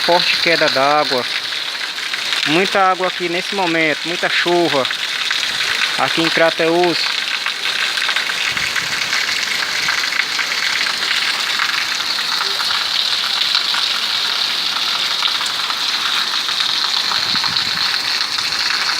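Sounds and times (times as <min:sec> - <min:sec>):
heavy rain falling: 0:00.0 - 0:18.9
water pouring from roof spout: 0:00.0 - 0:18.9.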